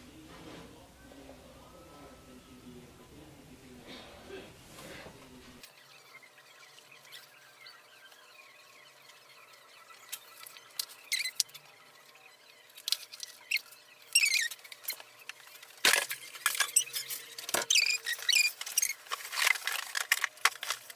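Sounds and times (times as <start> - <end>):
marker squeaking on paper: 10.4 - 11.6, 13.0 - 15.0, 16.1 - 19.7.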